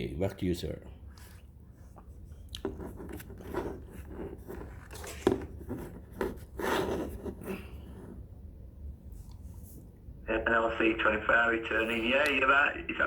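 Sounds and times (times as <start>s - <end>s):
low steady hum: 0.0s - 13.0s
handling noises scraping and clicking: 1.1s - 8.2s.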